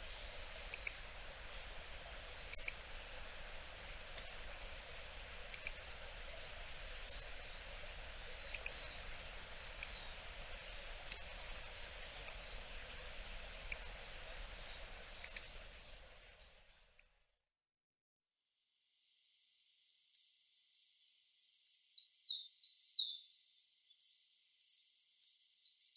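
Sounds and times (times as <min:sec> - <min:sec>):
bird giving sharp tic calls: 0:00.0 - 0:03.0, 0:05.5 - 0:10.2, 0:15.0 - 0:15.6
faint background hiss: 0:00.0 - 0:17.2.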